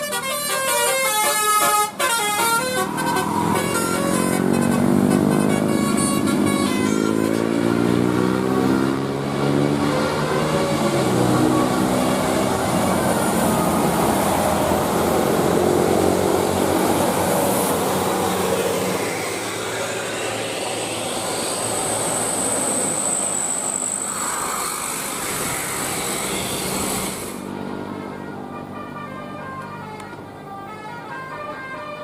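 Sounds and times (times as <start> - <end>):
musical bus horn: 0.0 - 7.9, 9.8 - 14.4, 28.0 - 32.0
bus engine and road noise: 0.0 - 32.0.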